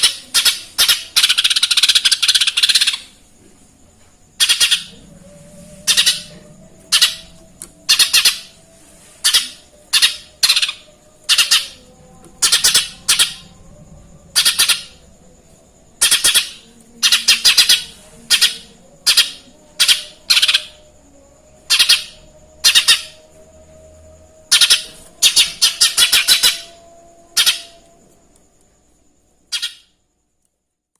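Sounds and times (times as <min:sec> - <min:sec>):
bird calling in harsh chirps: 0:00.0 - 0:03.2, 0:04.4 - 0:08.6, 0:09.2 - 0:13.5, 0:14.3 - 0:15.0, 0:16.0 - 0:20.8, 0:21.6 - 0:23.2, 0:24.4 - 0:27.9, 0:29.5 - 0:30.0.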